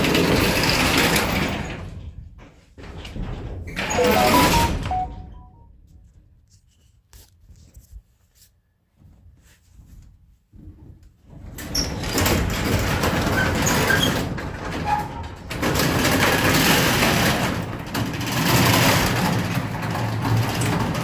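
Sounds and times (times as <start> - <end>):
garage door rattling along track: 0.0 - 5.1, 11.2 - 21.0.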